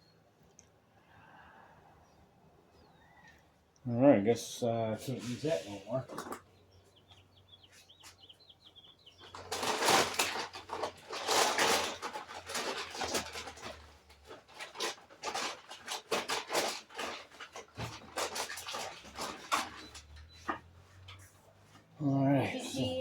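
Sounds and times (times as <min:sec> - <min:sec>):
loud rustling and scraping: 0:05.0 - 0:06.4, 0:09.2 - 0:22.0.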